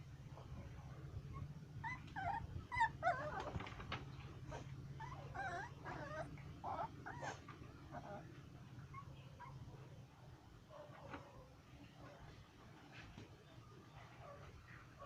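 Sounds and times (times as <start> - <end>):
dog whimpering: 1.3 - 3.8, 4.5 - 8.3.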